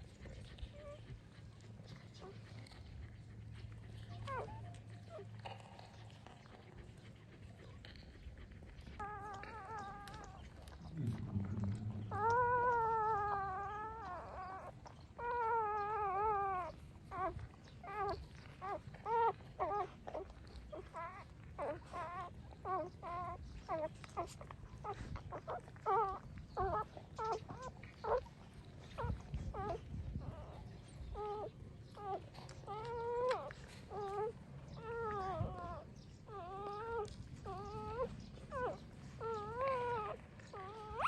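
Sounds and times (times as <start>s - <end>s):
puppies whining: 0.0s - 41.0s
puppies squeaking: 9.0s - 28.3s, 31.2s - 41.0s.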